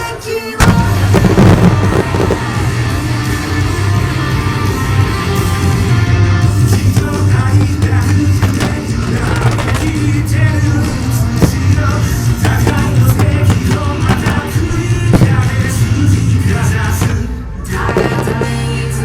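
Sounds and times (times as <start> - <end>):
rock song with singing: 0.0 - 19.0
driving drum beat: 0.7 - 18.8
sharp hits: 6.6 - 18.7.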